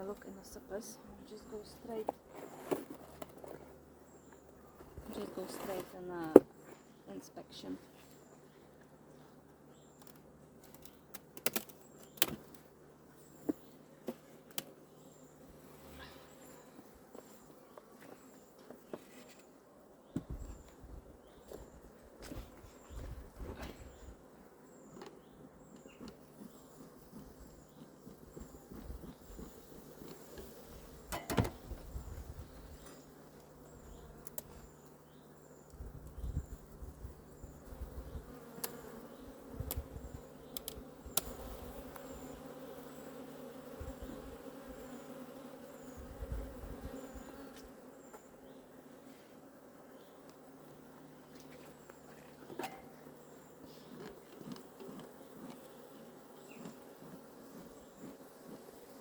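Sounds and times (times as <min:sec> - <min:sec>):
honeybees buzzing: 0:09.8 - 0:59.0.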